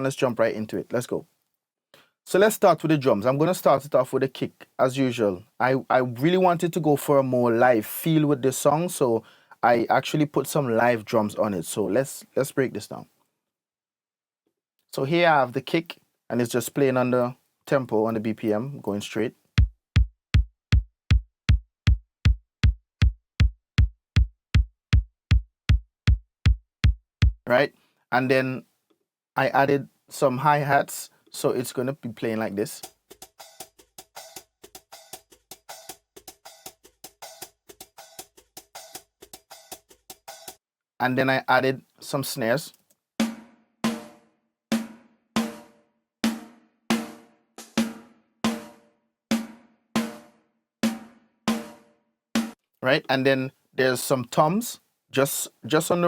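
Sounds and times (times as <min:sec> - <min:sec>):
kick drum beat: 0:19.6 - 0:27.5, 0:43.2 - 0:51.8
snare drum hits: 0:43.2 - 0:44.2, 0:44.8 - 0:52.6.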